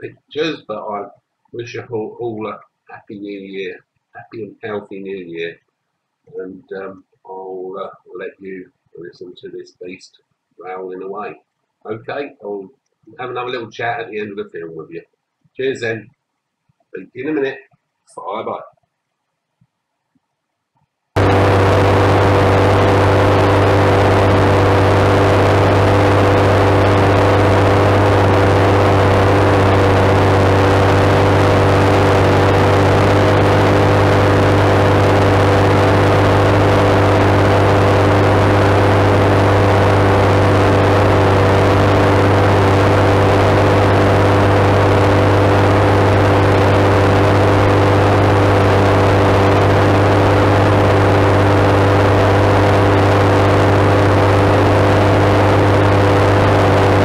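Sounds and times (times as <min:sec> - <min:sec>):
diesel engine growling under load: 0:21.2 - 0:57.0.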